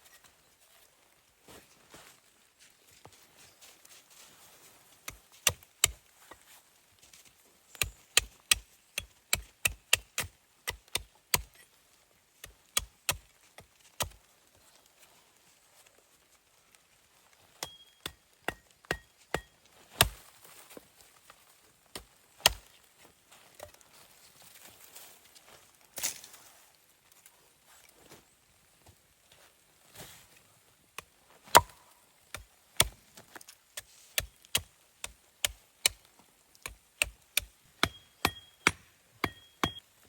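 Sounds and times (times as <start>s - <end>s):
axe chopping wood: 5.4s - 6.0s, 7.8s - 11.5s, 17.6s - 20.2s, 31.5s - 33.0s, 36.6s - 39.8s.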